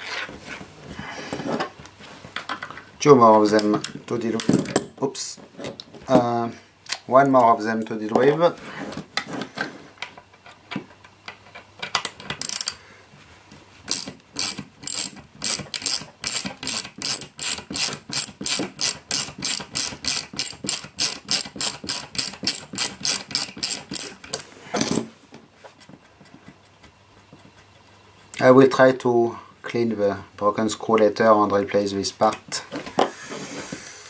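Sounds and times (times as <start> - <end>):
ratcheting tool clicking: 12.3 - 12.8, 13.9 - 24.4.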